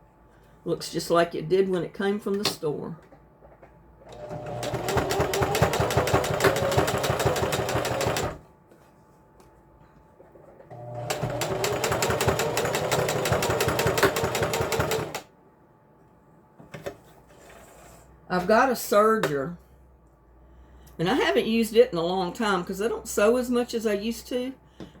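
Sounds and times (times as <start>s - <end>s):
sewing machine stitching: 4.1s - 8.4s, 10.7s - 15.2s.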